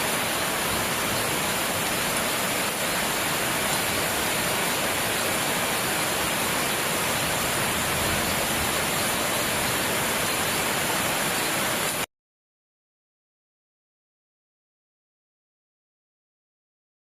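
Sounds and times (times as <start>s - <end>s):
steady rain: 0.0s - 12.1s.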